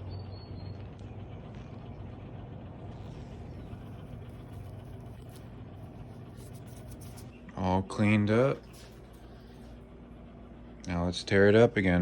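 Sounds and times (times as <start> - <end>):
machine hum: 0.0 - 12.0.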